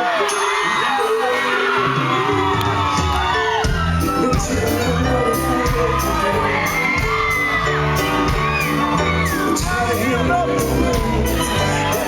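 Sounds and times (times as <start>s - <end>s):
crowd whooping and singing along: 0.0s - 12.0s
live reggae band playing: 0.0s - 12.0s
heavy bass line: 3.7s - 12.0s.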